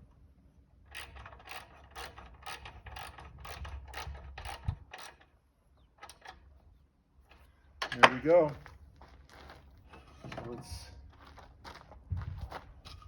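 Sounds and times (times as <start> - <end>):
wrench clicking on a nut: 0.9 - 5.3.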